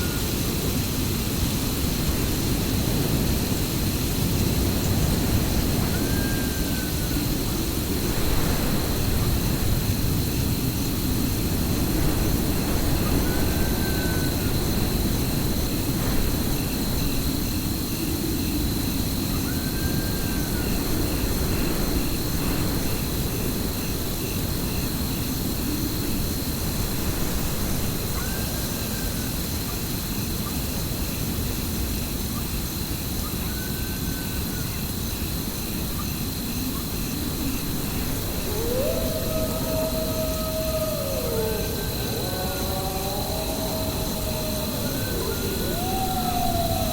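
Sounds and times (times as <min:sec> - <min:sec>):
low rumble of thunder: 0:00.0 - 0:32.0, 0:33.8 - 0:46.9
steady rain: 0:00.0 - 0:46.9
wolves howling: 0:37.6 - 0:46.9.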